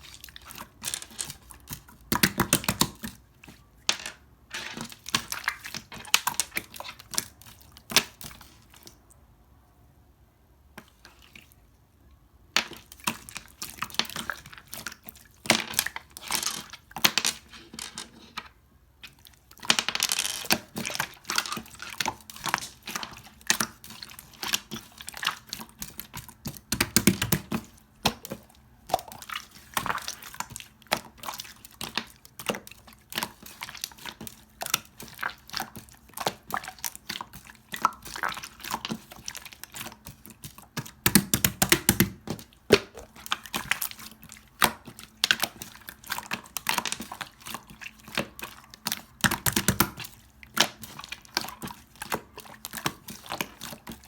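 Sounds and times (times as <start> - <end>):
slime squelching: 0.0 - 3.7, 4.5 - 9.2, 12.6 - 17.5, 20.4 - 54.0
slime squishing and popping: 20.4 - 54.0.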